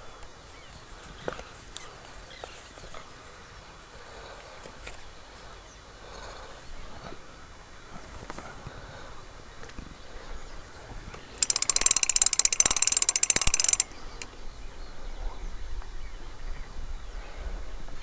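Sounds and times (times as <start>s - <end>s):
mechanical ratchet clicking: 11.4s - 13.9s.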